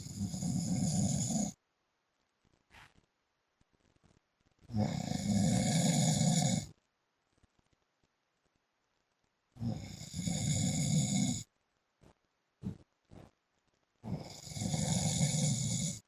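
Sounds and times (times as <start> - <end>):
man snoring: 0.0 - 1.6, 4.7 - 6.7, 9.6 - 11.5, 14.0 - 16.0.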